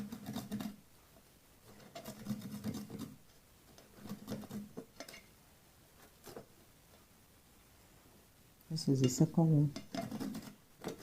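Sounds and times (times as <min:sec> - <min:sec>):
nut rasping on hand grater: 0:00.0 - 0:00.8, 0:01.7 - 0:03.2, 0:03.9 - 0:04.7, 0:09.8 - 0:11.0.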